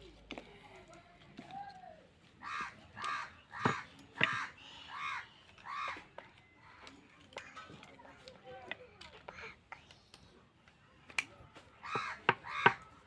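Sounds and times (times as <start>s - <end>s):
crow cawing: 2.4s - 6.0s, 11.8s - 12.8s.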